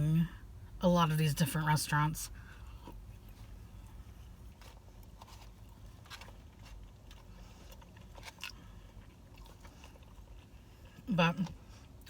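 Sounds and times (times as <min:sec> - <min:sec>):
chewing crispy fried food: 0:02.4 - 0:12.0.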